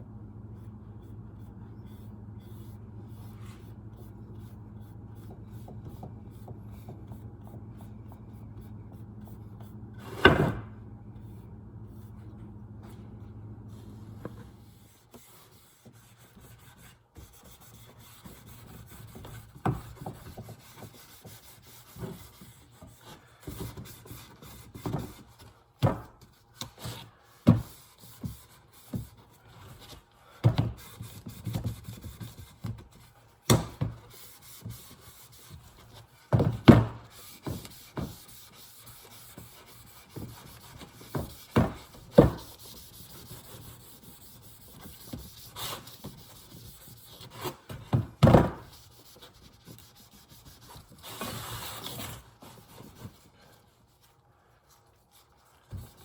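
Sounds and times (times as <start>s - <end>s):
wood being rubbed: 14.7s - 23.2s, 37.0s - 47.7s, 48.7s - 56.0s.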